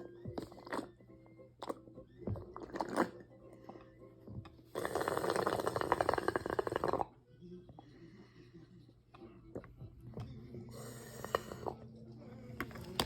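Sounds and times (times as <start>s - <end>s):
mouth and utensil noises: 0.0s - 7.2s
slurping noodles: 2.4s - 3.2s, 4.7s - 7.1s.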